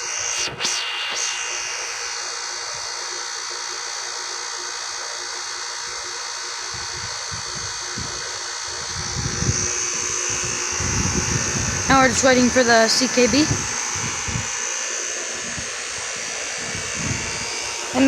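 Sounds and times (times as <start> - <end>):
air conditioner unit running: 1.6 - 18.0
low rumbling: 8.0 - 14.6, 15.3 - 18.0.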